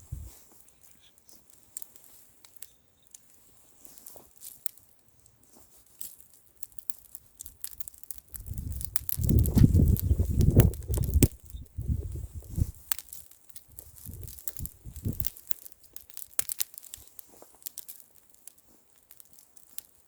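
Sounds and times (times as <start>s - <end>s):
wind buffeting microphone: 0.0s - 0.3s, 8.3s - 12.8s, 13.8s - 15.3s
bonfire crackling and popping: 0.0s - 20.0s.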